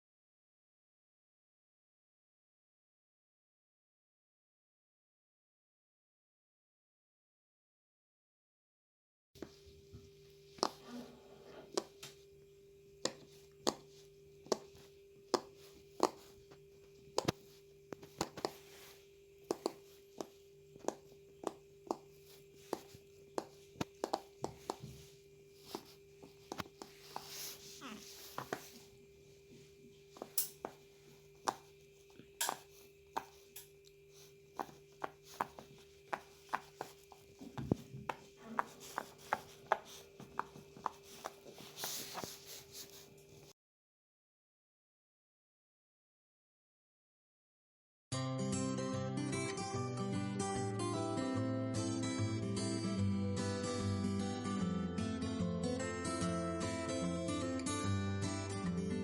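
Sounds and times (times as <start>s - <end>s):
faint steady hum: 9.4s - 43.5s.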